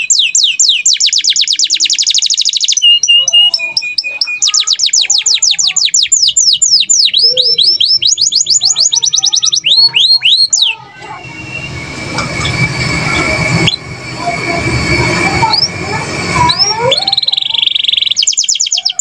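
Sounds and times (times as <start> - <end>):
canary singing trills: 0.0 - 19.0
faint chirps: 0.0 - 19.0
thin steady high note: 8.2 - 18.4
low rumble: 9.4 - 17.2.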